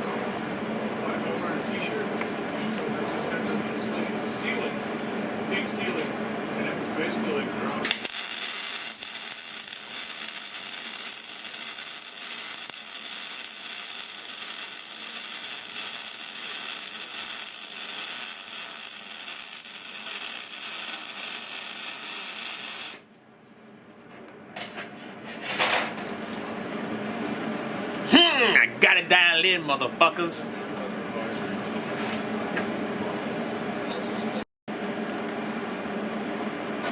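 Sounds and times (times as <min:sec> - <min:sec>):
welding arc crackling hiss: 0:07.8 - 0:23.0.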